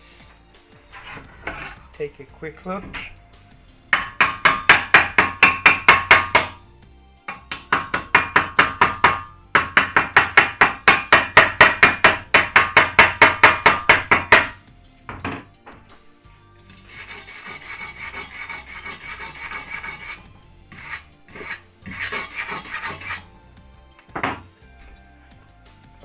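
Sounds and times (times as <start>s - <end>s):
hammer striking steel plate: 3.9s - 6.6s, 7.3s - 14.6s.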